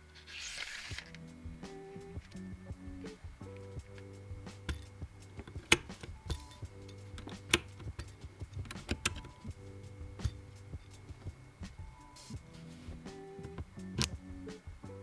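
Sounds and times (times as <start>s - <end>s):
background music with held tones: 0.0s - 15.0s
sharp clicks: 3.5s - 9.6s.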